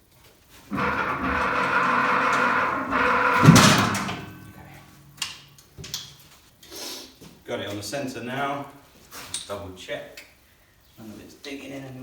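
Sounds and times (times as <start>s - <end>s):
crane motor running: 0.7s - 4.8s
loud metal clunk: 0.7s - 5.3s.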